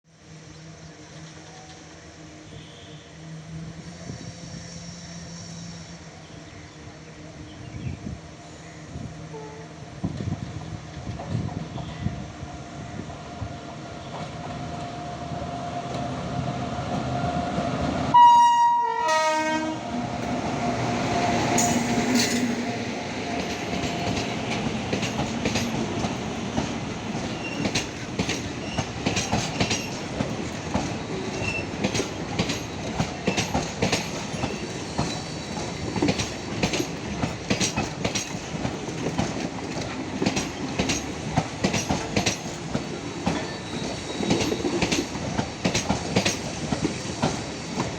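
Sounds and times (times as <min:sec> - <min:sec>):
train horn: 0:02.4 - 0:03.4, 0:09.3 - 0:09.8, 0:18.1 - 0:20.1
train wheels clacking over rail joints: 0:21.3 - 0:47.9.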